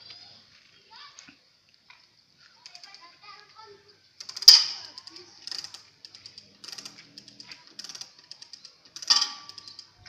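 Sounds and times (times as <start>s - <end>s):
rapid clicking and rattling: 4.2s - 10.0s.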